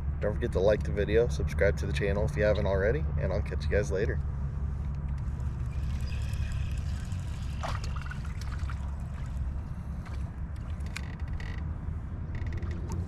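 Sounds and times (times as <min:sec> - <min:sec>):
low rumble: 0:01.2 - 0:13.0
water lapping around kayak: 0:05.2 - 0:11.4.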